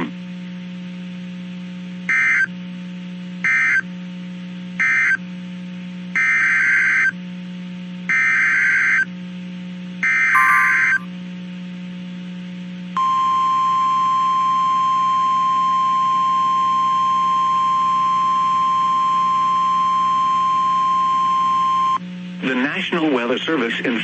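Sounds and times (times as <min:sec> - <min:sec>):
steady alert tone: 0:10.4 - 0:11.1.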